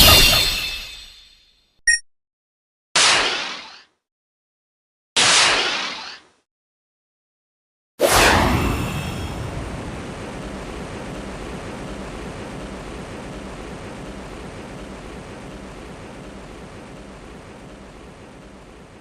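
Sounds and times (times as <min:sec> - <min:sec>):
blast rumble: 0:08.0 - 0:19.0.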